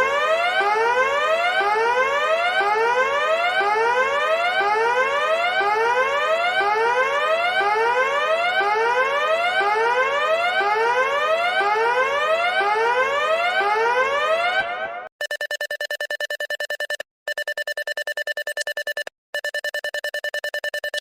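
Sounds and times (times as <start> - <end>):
rising whoop siren: 0.0 - 15.1.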